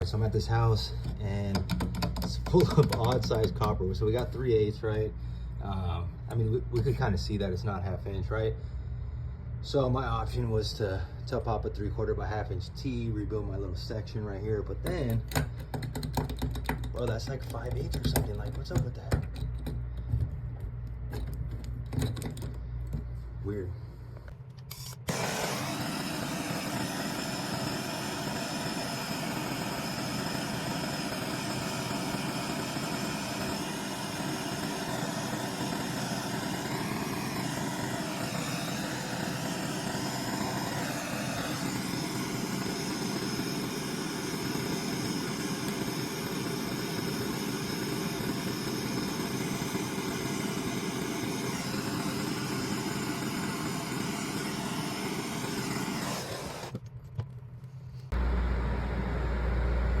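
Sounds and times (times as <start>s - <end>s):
steady mechanical drone: 16.3s - 56.9s
faint high whine: 23.4s - 56.8s.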